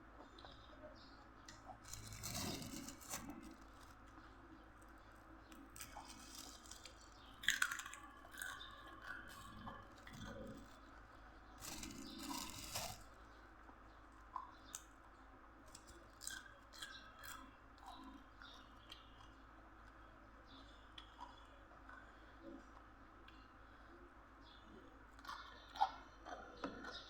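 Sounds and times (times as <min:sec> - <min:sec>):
person chewing crunchy food: 0:01.5 - 0:13.3, 0:15.7 - 0:18.1.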